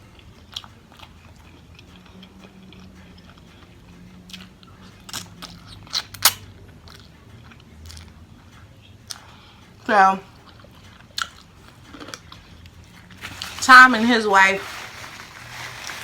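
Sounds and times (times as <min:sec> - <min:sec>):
chewing and biting: 0:00.0 - 0:09.5, 0:10.3 - 0:13.4.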